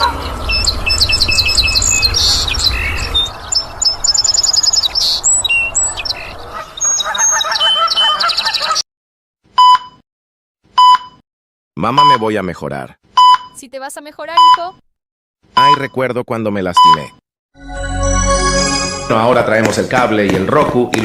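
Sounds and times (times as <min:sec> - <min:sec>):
birds chirping and trilling: 0:00.0 - 0:08.8.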